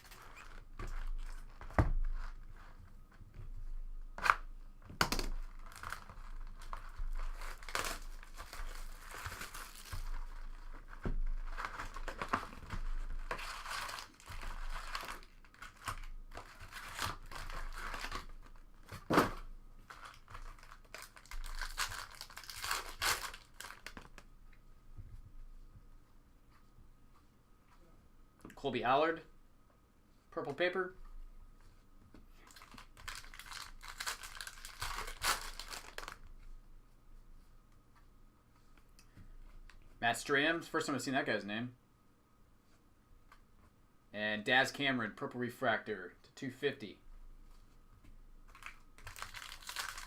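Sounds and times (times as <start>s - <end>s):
card packs torn and crinkled: 5.0s - 24.2s, 32.4s - 36.3s, 48.5s - 50.0s.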